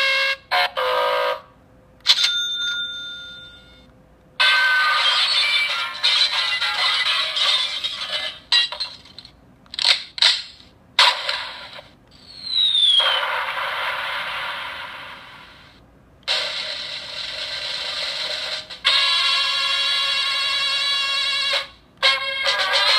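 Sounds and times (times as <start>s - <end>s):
falling whistle: 12.2s - 13.6s.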